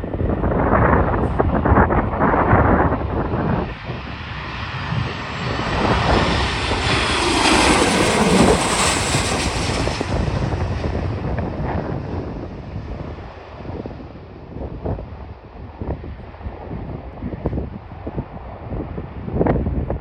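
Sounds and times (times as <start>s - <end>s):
airliner engine passing by: 0.0s - 20.0s
wind rumble on microphone: 0.0s - 20.0s.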